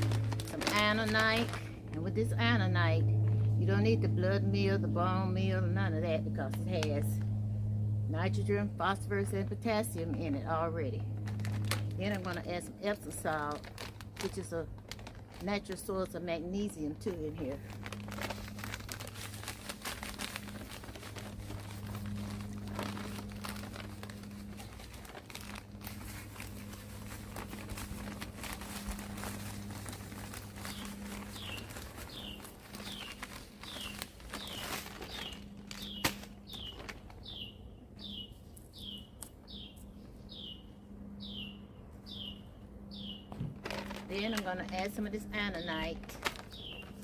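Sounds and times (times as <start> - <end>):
bag crinkling and rustling: 0.0 - 3.5, 9.9 - 39.7, 43.3 - 47.0
low steady hum: 0.0 - 47.0
bird chirping: 30.6 - 43.4, 46.5 - 47.0.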